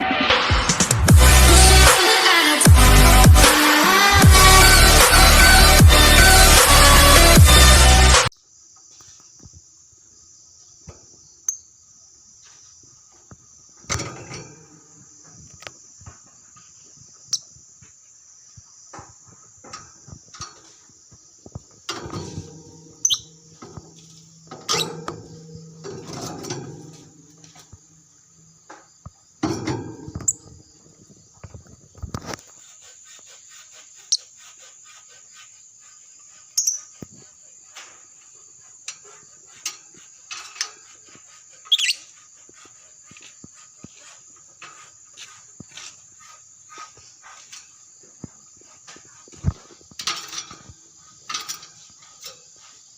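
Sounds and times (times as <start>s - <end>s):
bird chirping: 23.0s - 23.6s, 41.6s - 42.2s.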